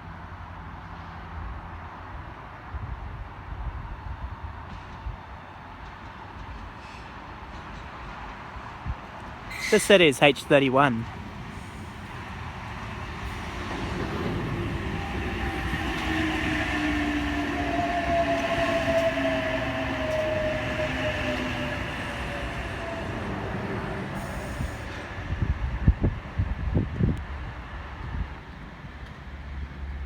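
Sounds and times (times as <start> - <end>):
electric train rumble: 11.0 - 30.0.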